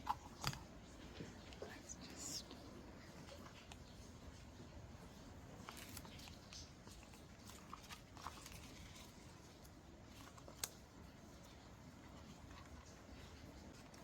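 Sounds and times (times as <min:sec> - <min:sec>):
paper rustling: 0:05.2 - 0:14.0.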